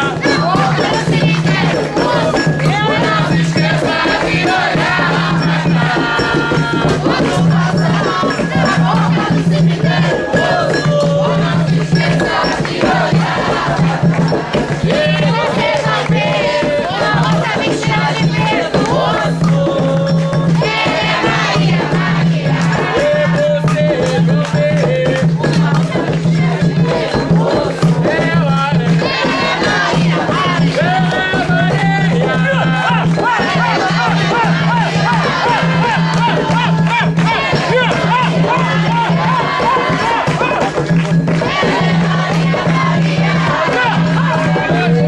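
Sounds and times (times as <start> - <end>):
sharp drum or clap strokes: 0.0 - 45.0
voices chanting and shouting: 0.0 - 45.0.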